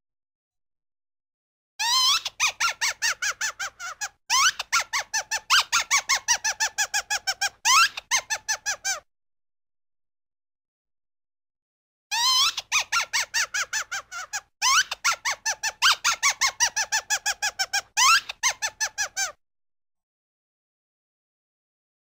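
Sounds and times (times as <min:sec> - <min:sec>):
cartoon squeaky laugh: 0:01.8 - 0:09.1, 0:12.1 - 0:19.4.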